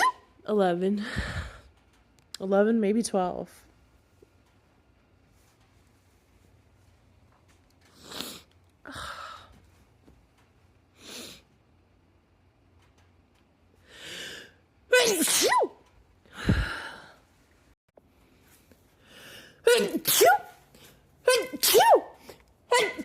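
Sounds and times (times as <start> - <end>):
woman sneezing: 14.9 - 15.8, 19.6 - 20.6, 21.3 - 23.0.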